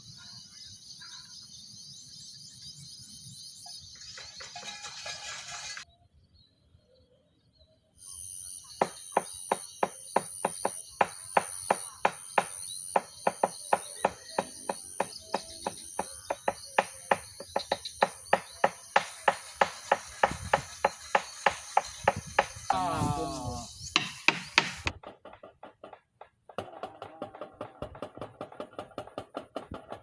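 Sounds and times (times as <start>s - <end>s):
insects trilling: 8.0s - 24.9s.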